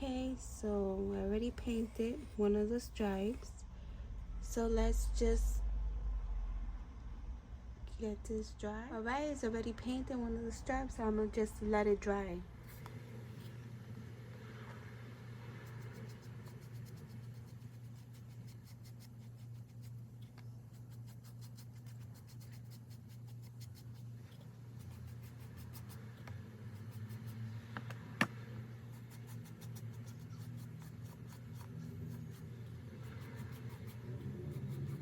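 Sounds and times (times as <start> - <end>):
low steady hum: 0.0 - 35.0
rubbing and scraping: 28.8 - 35.0.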